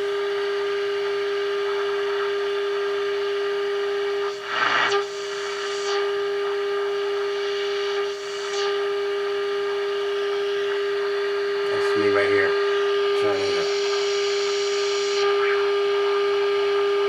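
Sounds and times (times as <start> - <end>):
radio static hiss: 1.2 - 16.8
steady test tone: 4.2 - 15.8.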